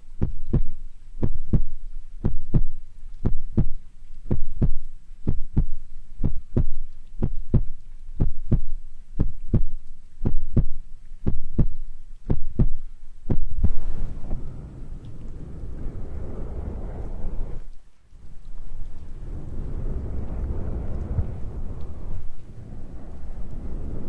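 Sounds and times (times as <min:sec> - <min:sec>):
low white noise rumble: 0:00.0 - 0:24.0
heartbeat thumps: 0:00.2 - 0:14.0.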